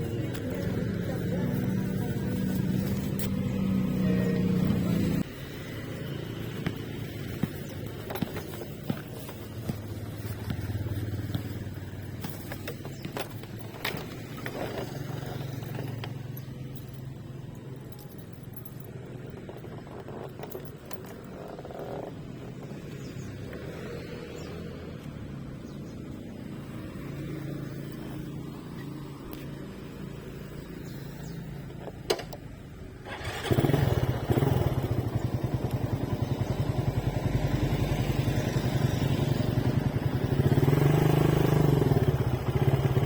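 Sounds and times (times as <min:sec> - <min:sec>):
motorcycle engine running: 0:00.0 - 0:24.5, 0:33.0 - 0:43.0.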